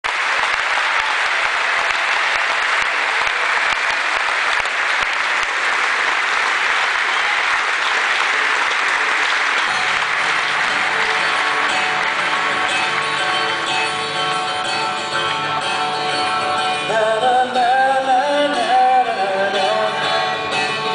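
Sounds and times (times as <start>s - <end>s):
audience applauding: 0.0s - 14.9s
guitar notes: 9.6s - 20.9s.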